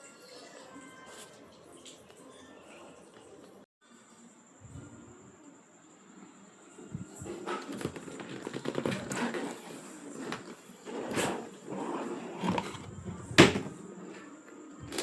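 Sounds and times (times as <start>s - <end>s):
packaging rustling and clattering: 7.2s - 13.8s.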